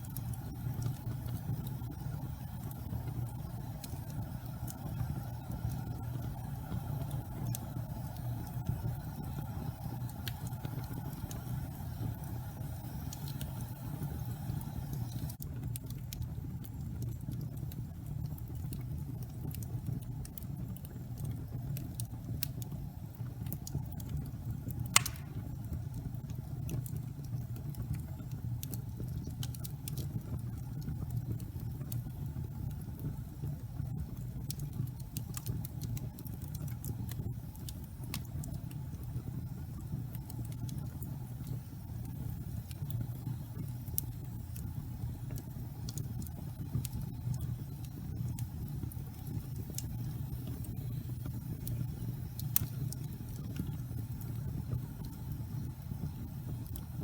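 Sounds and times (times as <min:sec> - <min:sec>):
fire popping: 0:00.0 - 0:57.0
wood fire burning: 0:00.0 - 0:57.0.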